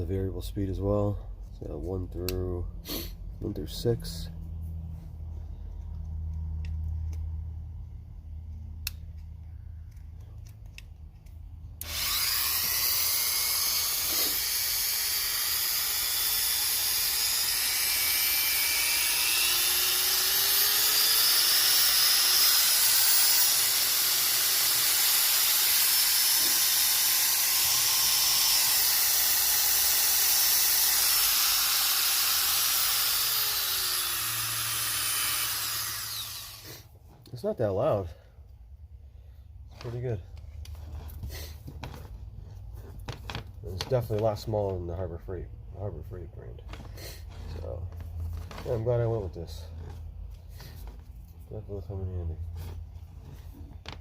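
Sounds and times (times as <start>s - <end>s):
belt sander whining: 11.8s - 36.9s.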